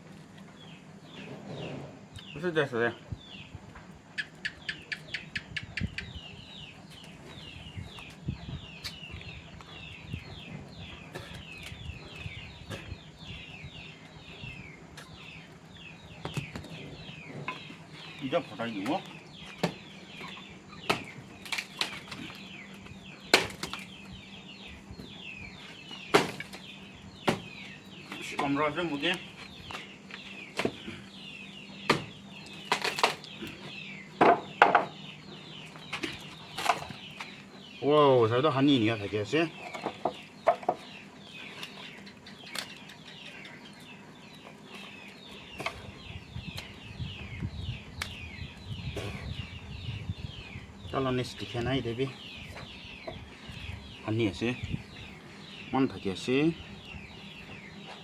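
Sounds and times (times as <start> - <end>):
birds chirping: 0.0 - 58.0
sharp wooden knocks: 34.2 - 35.0.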